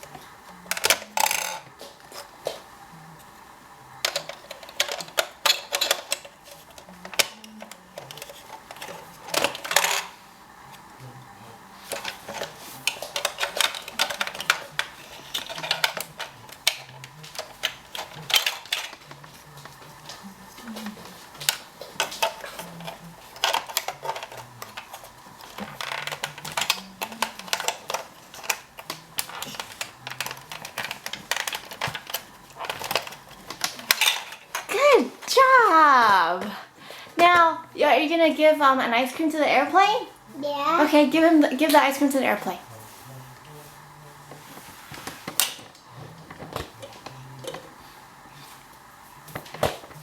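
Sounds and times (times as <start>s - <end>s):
plastic toy pieces clacking: 0.7s - 1.6s, 4.0s - 10.1s, 11.9s - 19.8s, 21.4s - 34.7s.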